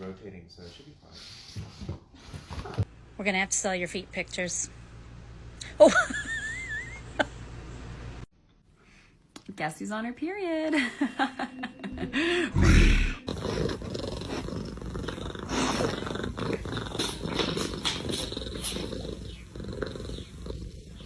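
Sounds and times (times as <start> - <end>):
cat purring: 13.2 - 21.0.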